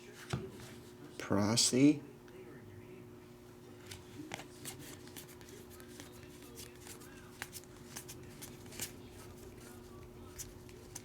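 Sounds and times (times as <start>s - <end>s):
trading cards snapping and rustling: 3.9s - 9.0s.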